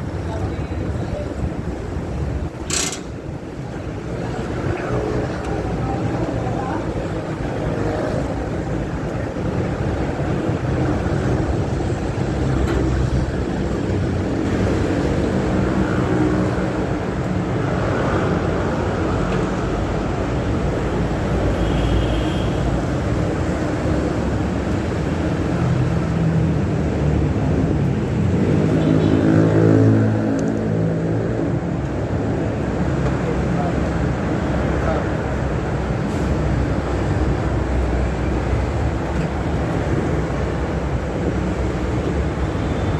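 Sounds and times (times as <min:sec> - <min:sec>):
traffic engine rumble: 0:00.0 - 0:42.9.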